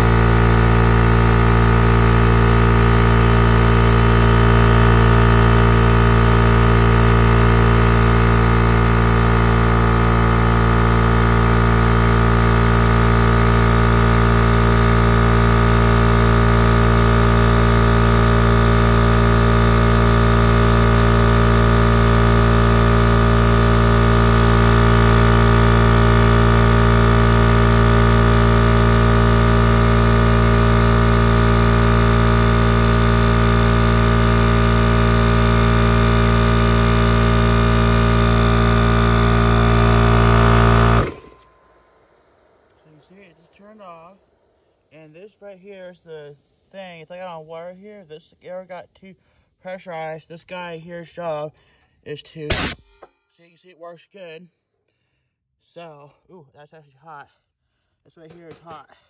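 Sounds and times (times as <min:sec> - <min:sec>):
air compressor humming: 0:00.0 - 0:50.8, 0:52.5 - 0:52.8.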